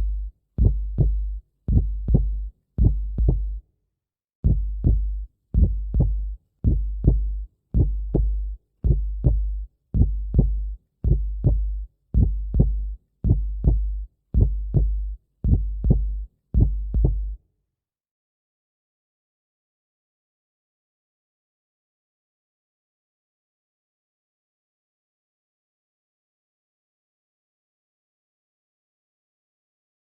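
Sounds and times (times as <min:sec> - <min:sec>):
heartbeat thumps: 0:00.0 - 0:03.6, 0:04.4 - 0:17.4.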